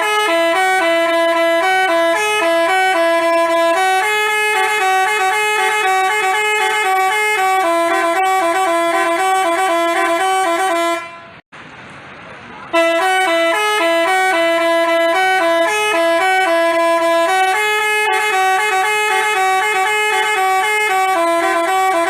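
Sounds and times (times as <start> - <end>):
multi-tone bus horn tune: 0.0 - 11.4, 12.7 - 22.0.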